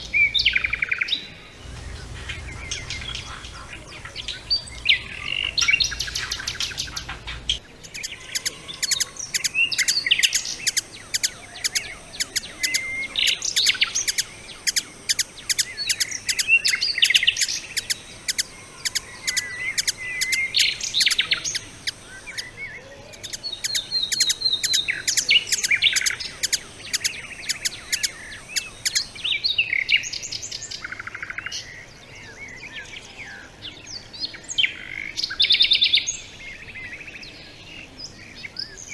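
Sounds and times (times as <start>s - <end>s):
songbirds chirping and whistling: 0.3s - 29.3s.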